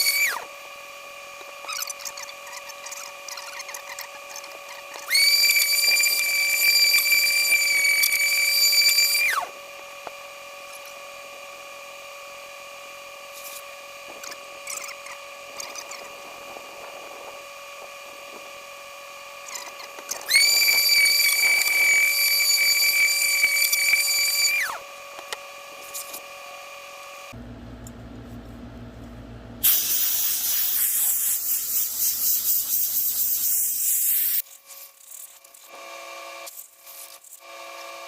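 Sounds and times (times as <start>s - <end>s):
electric sander whining: 0.0s - 27.4s.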